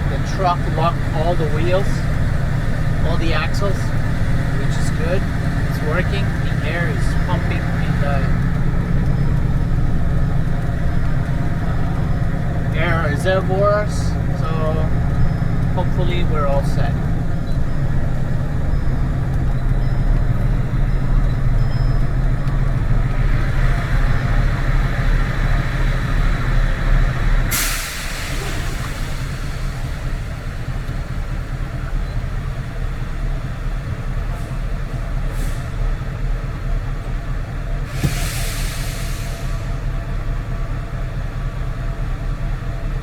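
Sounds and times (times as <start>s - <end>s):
truck diesel engine idling: 0.0s - 43.0s
sharp hiss of released air: 37.9s - 39.6s
faint air puffs: 37.9s - 39.7s.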